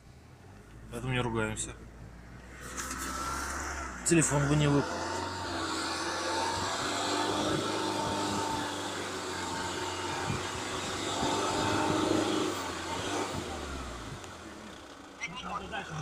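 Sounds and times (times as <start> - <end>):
car engine revving: 0.4 - 16.0
wheels spinning on ice: 2.4 - 15.0.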